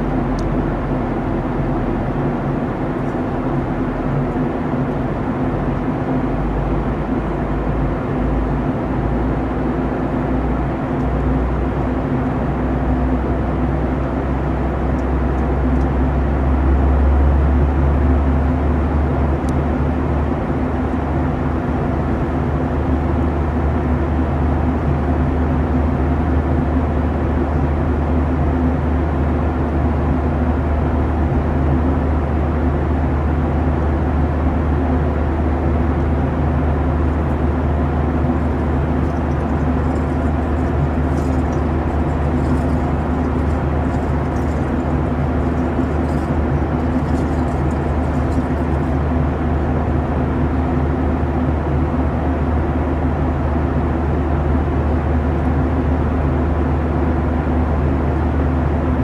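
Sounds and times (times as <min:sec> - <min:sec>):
rushing airflow in cabin: 0:32.4 - 0:52.3
jet engines humming: 0:36.3 - 0:49.9
deep rumble: 0:36.6 - 0:49.6.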